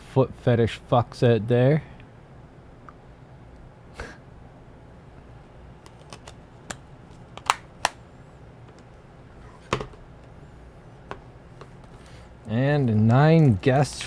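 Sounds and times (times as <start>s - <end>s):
loud plastic snaps: 5.8s - 8.0s
plastic disc cases clicking: 5.8s - 8.0s, 9.6s - 10.0s, 11.1s - 14.0s.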